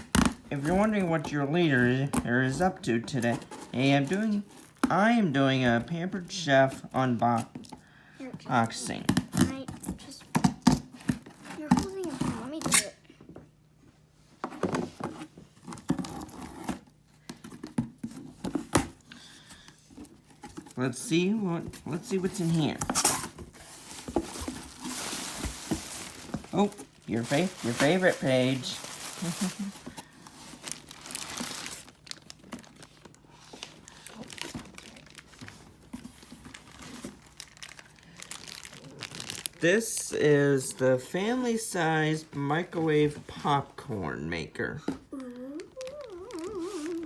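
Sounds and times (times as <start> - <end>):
cardboard box rustling and knocking: 21.6 - 28.2
packing material crinkling: 21.9 - 40.2, 45.1 - 47.0.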